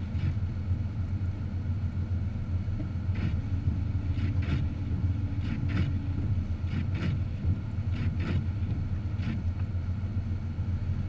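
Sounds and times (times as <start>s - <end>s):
car engine and road rumble: 0.0s - 11.0s.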